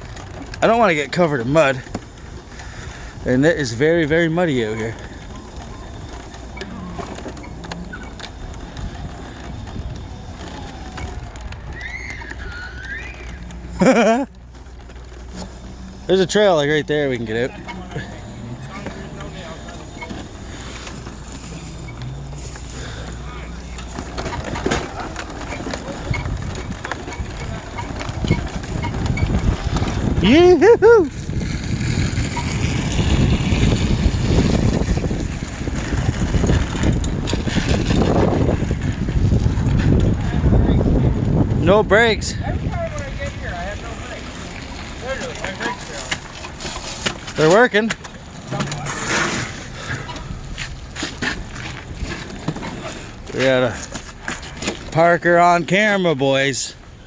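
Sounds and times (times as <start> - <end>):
motorbike engine running: 0.0 - 55.1
off-road bike rumbling in mud: 0.0 - 57.0.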